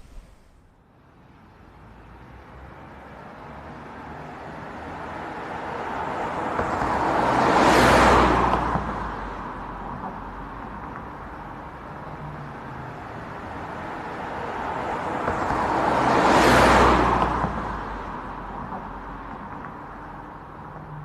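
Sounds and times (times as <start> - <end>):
vehicle driving past: 0.0 - 0.7.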